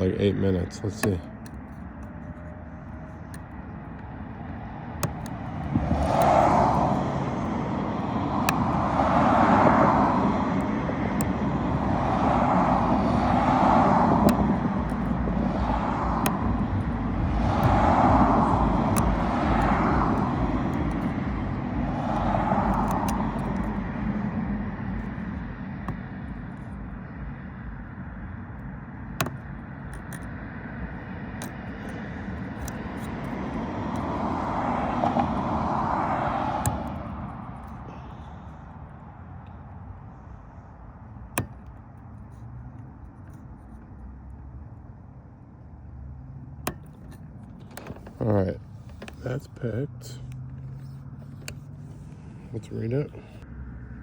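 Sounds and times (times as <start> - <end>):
outdoor background noise: 0.0 - 54.0
lock pick clicking in car lock: 4.9 - 7.4, 8.4 - 26.8, 28.5 - 30.3, 31.3 - 34.6, 36.6 - 37.8, 41.2 - 42.4, 46.6 - 49.4, 50.2 - 52.1.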